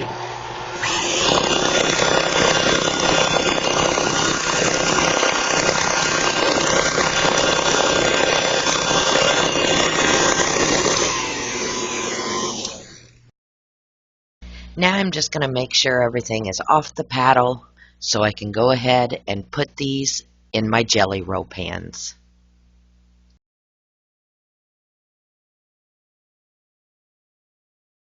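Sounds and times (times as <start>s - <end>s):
electric stand mixer running: 0.0s - 13.2s.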